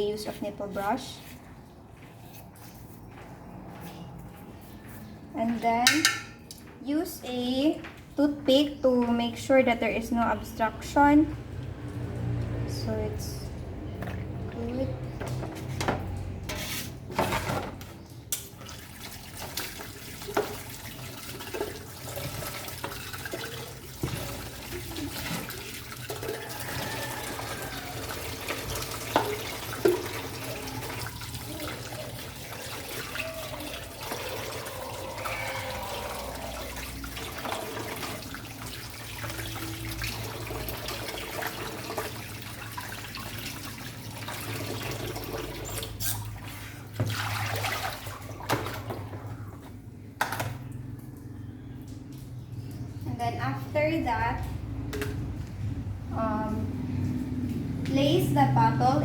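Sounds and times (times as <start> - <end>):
tap water running into sink: 18.3 - 46.0.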